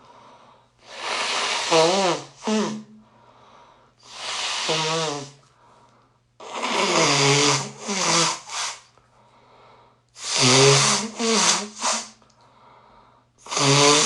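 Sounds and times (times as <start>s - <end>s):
person blowing nose loudly: 0.8s - 3.0s, 4.0s - 5.4s, 6.4s - 8.9s, 10.2s - 12.2s, 13.4s - 14.0s.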